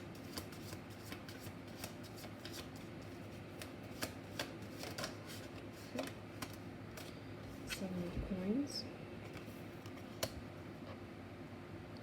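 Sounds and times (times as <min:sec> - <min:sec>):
cards being shuffled: 0:00.1 - 0:07.8.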